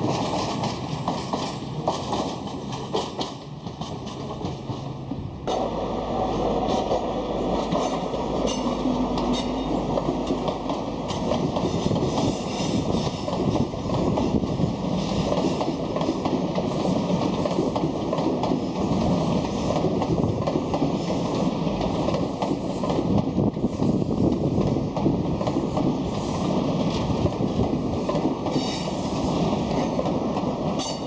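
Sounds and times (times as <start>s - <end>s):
train passing on tracks: 0.0s - 31.0s.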